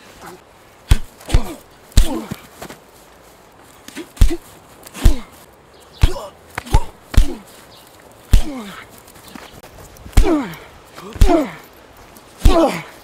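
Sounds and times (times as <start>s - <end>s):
heavy punch thuds: 0.9s - 2.3s
short falling grunt: 10.2s - 11.6s, 12.4s - 13.0s.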